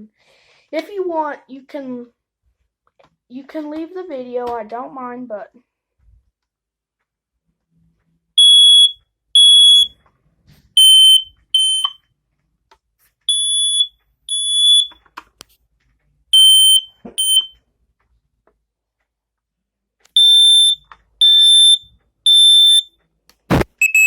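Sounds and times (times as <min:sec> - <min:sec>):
smoke alarms beeping: 0:08.4 - 0:09.9, 0:10.8 - 0:12.0, 0:13.3 - 0:15.0, 0:16.4 - 0:17.6, 0:20.2 - 0:22.9, 0:23.7 - 0:24.0.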